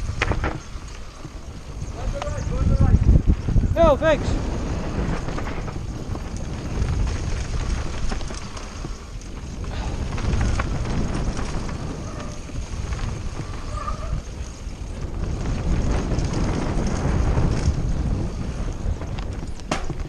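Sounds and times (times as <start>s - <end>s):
bike rattling: 0.0s - 20.0s
wind rumbling on microphone: 0.0s - 20.0s.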